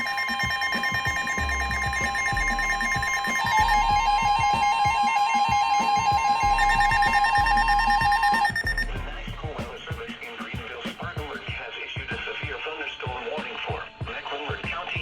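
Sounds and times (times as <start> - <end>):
steady warning alarm tone: 0.0 - 9.9
fast warbling alarm: 0.0 - 10.0
weather radio beeping alarms: 0.0 - 10.0.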